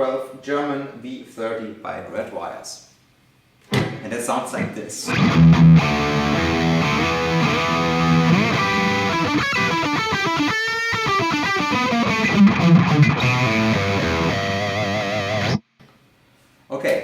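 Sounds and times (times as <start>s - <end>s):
distorted electric guitar bends: 5.1s - 15.6s.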